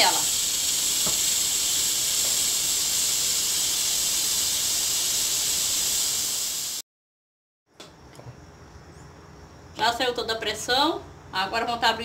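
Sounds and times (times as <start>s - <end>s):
pressure cooker hissing: 0.0s - 6.8s.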